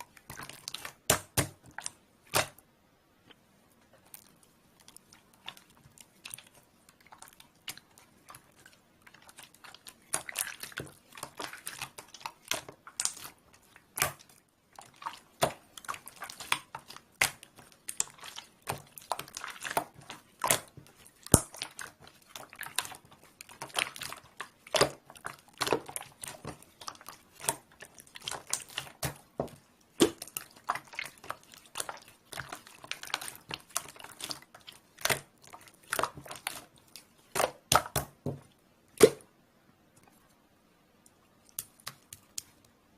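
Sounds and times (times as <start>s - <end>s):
slime clicking and popping: 14.9s - 36.7s, 37.3s - 38.3s.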